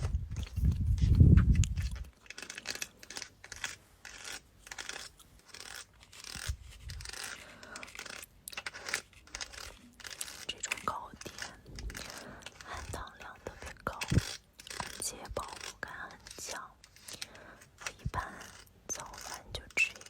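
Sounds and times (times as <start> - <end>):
crisp scratching and rustling: 0.0 - 20.0.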